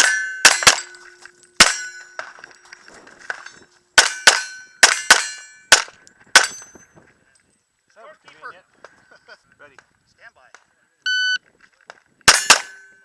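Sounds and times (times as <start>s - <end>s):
handgun shots: 0.0s - 1.0s, 12.3s - 12.8s
steel target clanging: 0.0s - 2.4s, 3.3s - 6.9s, 12.3s - 13.0s.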